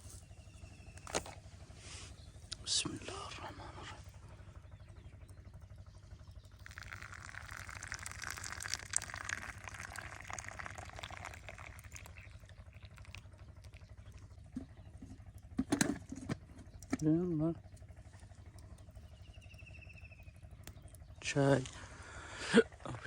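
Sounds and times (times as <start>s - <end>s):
tea pouring into glass: 6.6s - 13.8s.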